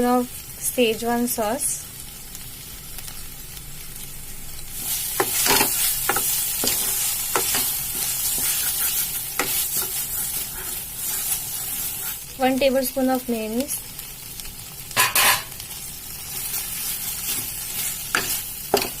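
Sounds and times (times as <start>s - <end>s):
vegetables sizzling in oil: 0.0s - 19.0s
spoon scraping a pan: 4.8s - 12.2s, 15.0s - 15.6s, 16.3s - 19.0s.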